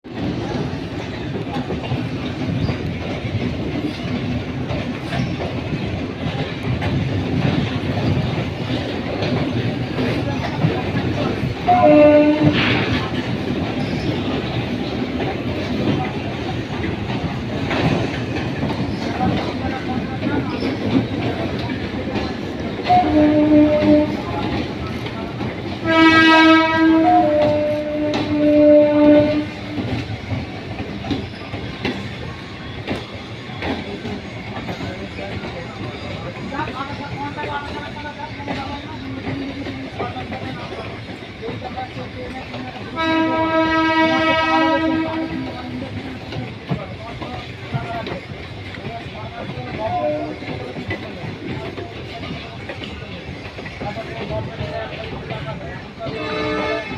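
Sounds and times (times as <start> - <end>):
running train rumble: 0.0 - 56.9
wheels clacking over rail joints: 0.1 - 56.9
train horn: 11.6 - 13.0, 22.8 - 24.4, 25.8 - 30.0, 42.9 - 45.7, 49.9 - 50.6, 56.1 - 56.9.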